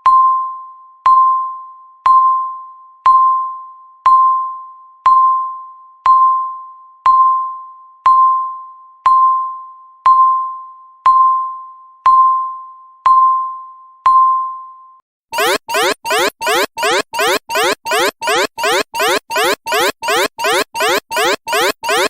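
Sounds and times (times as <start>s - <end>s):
electronic timer ding: 15.4s - 22.0s
pulsing alarm with rising sweeps: 15.4s - 22.0s.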